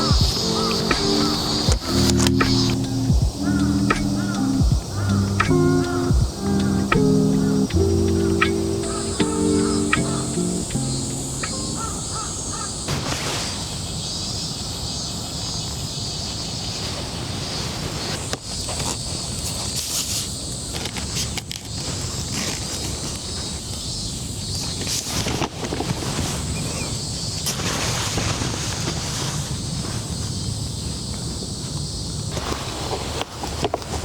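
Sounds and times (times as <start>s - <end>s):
crows cawing: 0.0s - 12.9s
outdoor background hiss: 0.0s - 34.0s.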